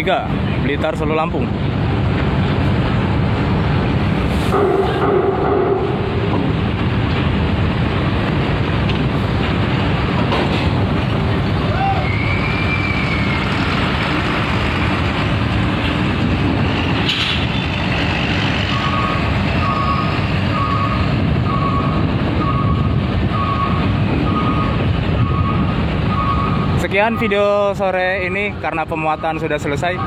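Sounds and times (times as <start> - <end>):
wind on microphone: 1.4 - 27.7
diesel engine running: 1.5 - 28.6
vehicle reversing alarm beeping: 18.7 - 27.7, 28.9 - 30.0.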